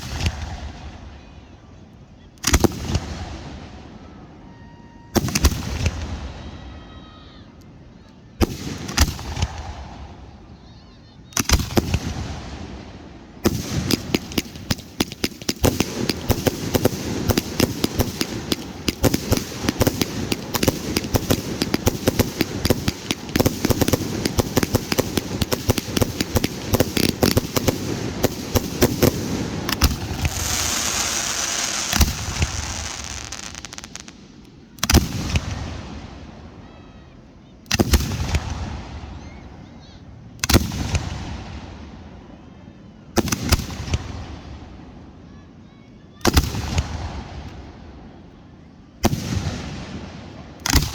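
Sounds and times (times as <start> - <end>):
fireworks bangs and pops: 0.0 - 1.0, 5.2 - 6.2, 8.4 - 10.1, 11.4 - 36.2, 37.7 - 39.0, 49.0 - 50.9
fireworks hissing crackle: 13.5 - 36.1.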